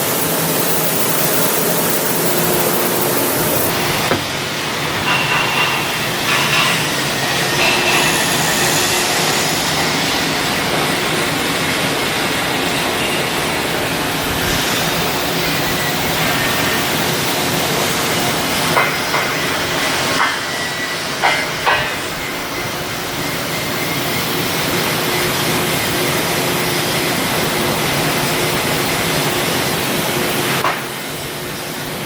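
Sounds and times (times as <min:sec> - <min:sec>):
loud machinery noise: 0:00.0 - 0:32.0
short sharp knocks: 0:04.1 - 0:04.4.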